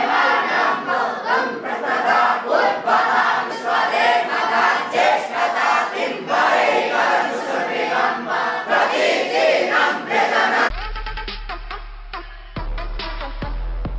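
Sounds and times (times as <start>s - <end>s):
group of voices chanting: 0.0s - 10.7s.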